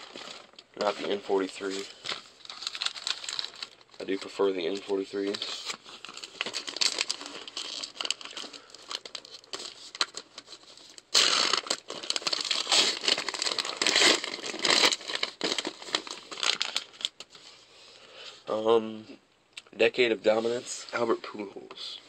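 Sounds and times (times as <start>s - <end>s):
wrapping crinkling and tearing: 0.0s - 17.5s.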